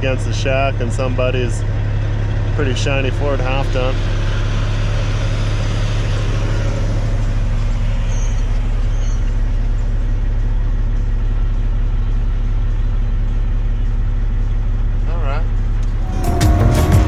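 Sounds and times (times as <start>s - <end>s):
diesel engine droning: 0.0s - 17.0s.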